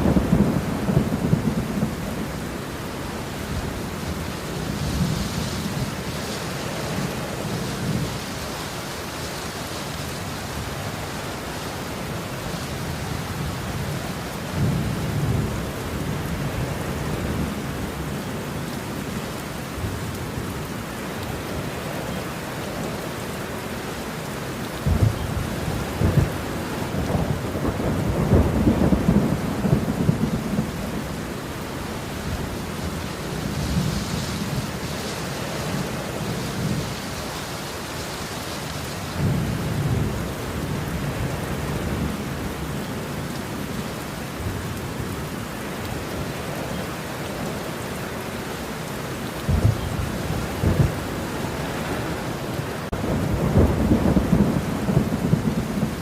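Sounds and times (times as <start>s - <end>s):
rolling thunder: 0.0s - 2.4s, 24.8s - 31.2s, 49.4s - 52.2s, 52.8s - 56.0s
steady rain: 0.0s - 56.0s.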